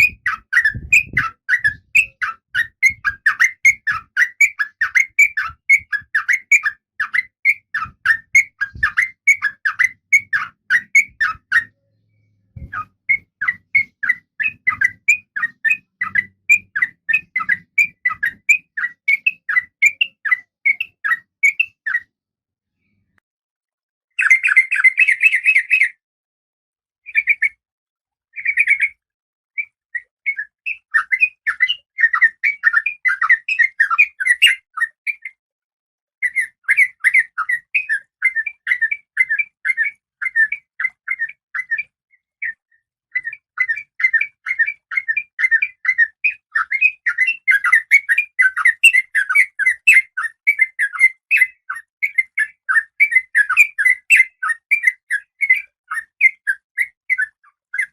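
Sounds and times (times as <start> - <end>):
bird chattering chirps: 0.0 - 12.0, 12.6 - 22.1, 36.2 - 57.9.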